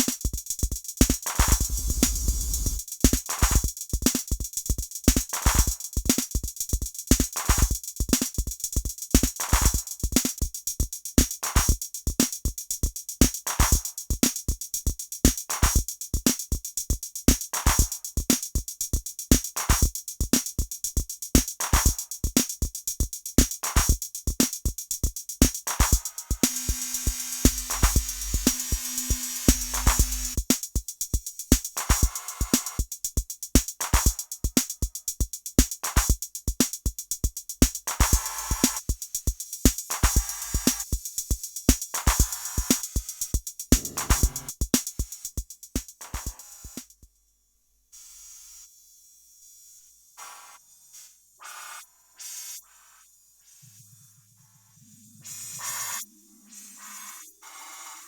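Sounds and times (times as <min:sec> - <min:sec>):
drum machine beat with delay: 0:00.0 - 0:04.5, 0:19.3 - 0:46.4.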